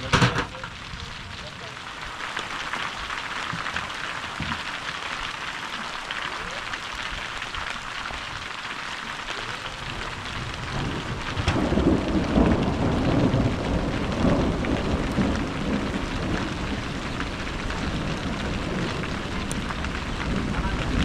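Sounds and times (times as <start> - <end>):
thunder rolling: 0.0 - 1.7, 9.6 - 21.0
heavy rain: 0.0 - 21.0.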